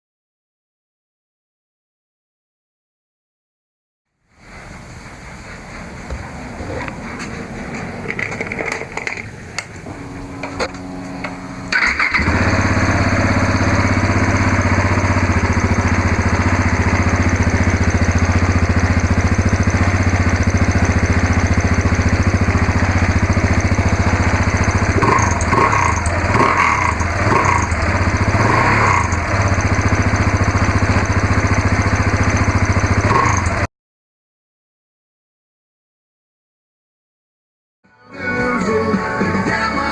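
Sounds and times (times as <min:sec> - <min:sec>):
engine throttle blips: 0:04.4 - 0:33.7
motorcycle engine cranking and idling: 0:04.5 - 0:33.7.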